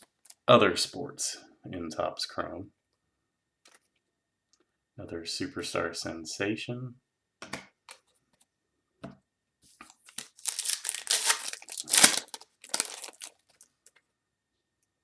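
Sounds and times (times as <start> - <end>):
foil wrapper tearing and crinkling: 10.0 - 13.8.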